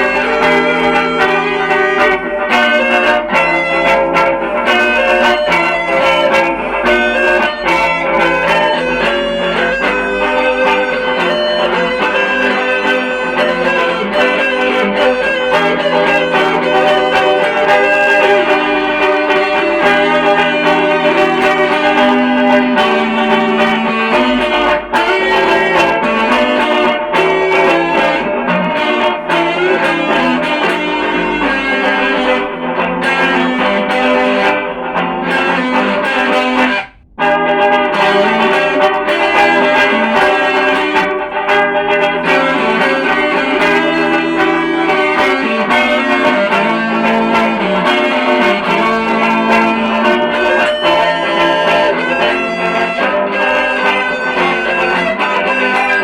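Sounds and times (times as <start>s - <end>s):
electric guitar playing: 0.0s - 56.0s
looped guitar parts with effects: 0.0s - 56.0s.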